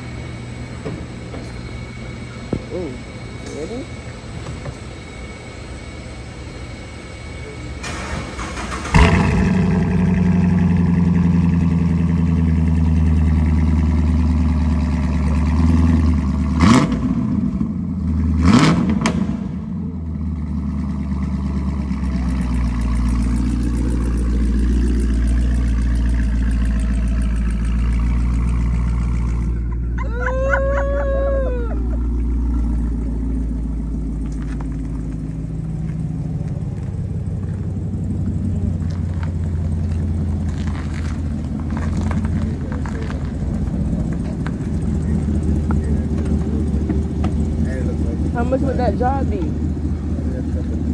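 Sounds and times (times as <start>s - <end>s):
car engine idling and revving: 0.0s - 50.9s.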